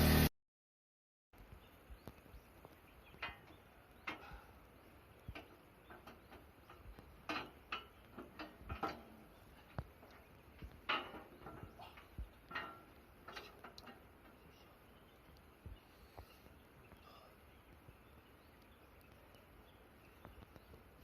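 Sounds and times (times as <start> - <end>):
hand tools clicking and tapping: 5.3 - 14.1.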